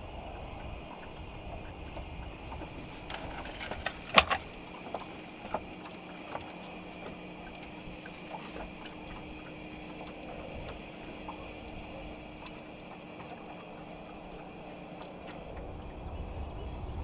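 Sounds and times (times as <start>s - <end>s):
faint steady hum: 0.0s - 17.0s
fishing gear clicks and knocks: 2.6s - 7.7s.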